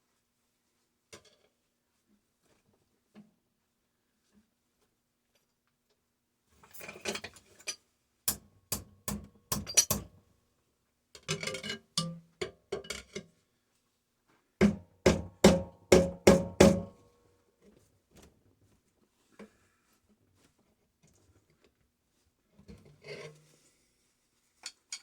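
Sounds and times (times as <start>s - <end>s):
hammer blows on steel: 15.1s - 16.9s.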